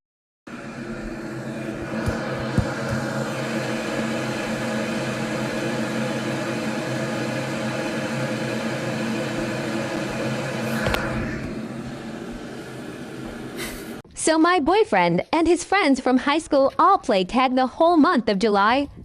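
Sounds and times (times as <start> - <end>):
steady droning hum: 0.5 - 14.0.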